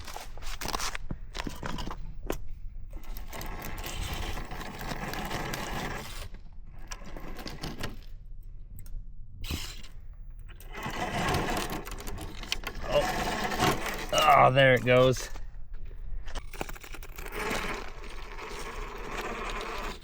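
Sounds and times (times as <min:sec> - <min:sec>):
electric motor and gears whirring: 0:00.0 - 0:20.0
tires scraping on stone: 0:02.9 - 0:08.2, 0:09.4 - 0:15.5, 0:16.2 - 0:20.0.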